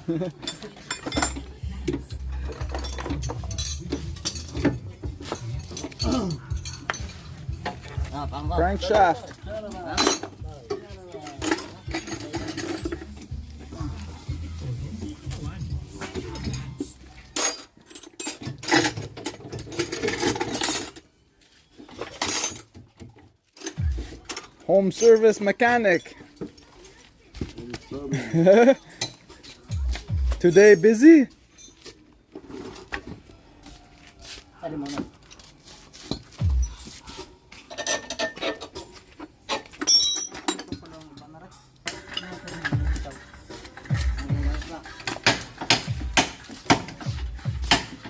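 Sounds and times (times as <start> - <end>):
metal hand tools clinking: 0.1 - 13.5, 15.3 - 21.1, 23.6 - 27.0, 28.1 - 32.8, 37.6 - 48.0
metallic clinks of hand tools: 0.2 - 8.0, 39.5 - 48.0.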